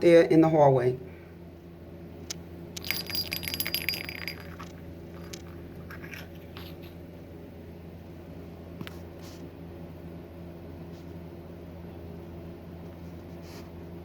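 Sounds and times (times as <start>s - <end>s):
steady low hum: 0.0s - 14.0s
small hard objects clinking: 2.8s - 7.0s.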